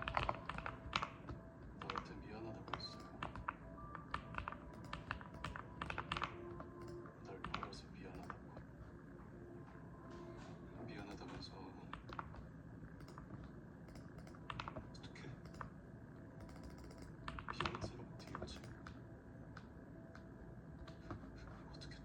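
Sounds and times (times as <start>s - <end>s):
mechanical keyboard typing: 0.0s - 1.2s, 1.8s - 8.4s, 13.0s - 13.3s, 13.9s - 14.8s, 15.4s - 15.7s, 16.4s - 18.9s.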